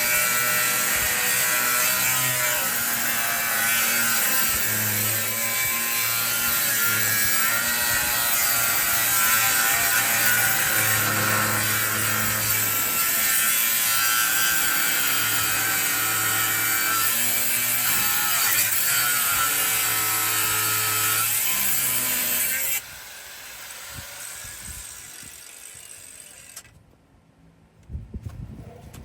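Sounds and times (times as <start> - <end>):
power tool whining: 0.0 - 26.8.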